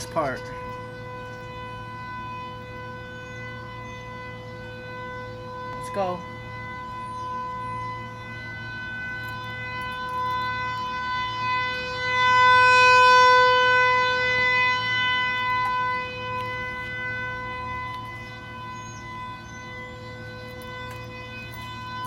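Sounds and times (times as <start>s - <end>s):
warning siren steady tone: 0.0s - 22.0s.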